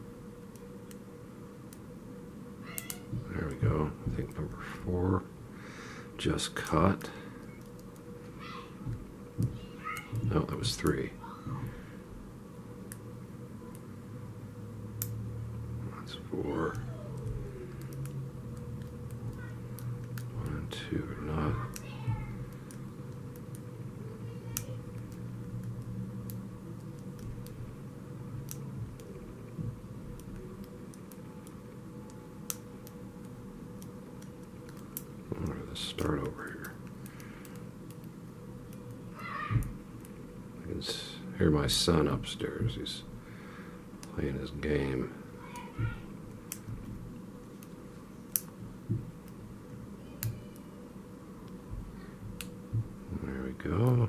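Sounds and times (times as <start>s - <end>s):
steady low hum: 0.0s - 54.0s
soft low thumps: 48.6s - 49.2s, 51.7s - 53.1s.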